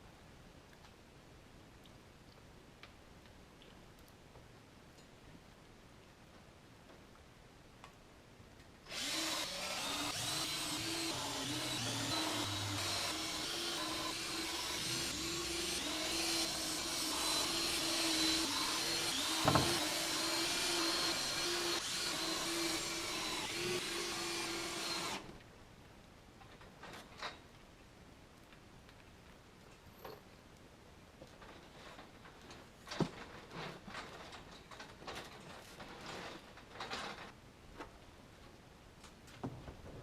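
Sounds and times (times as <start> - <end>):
power tool humming: 8.9 - 25.3.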